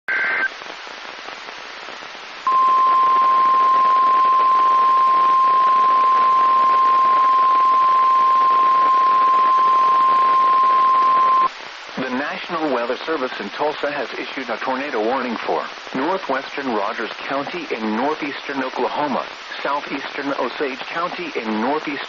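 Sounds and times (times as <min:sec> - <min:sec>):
radio static hiss: 0:00.1 - 0:22.0
steady piercing alarm tone: 0:02.5 - 0:11.5.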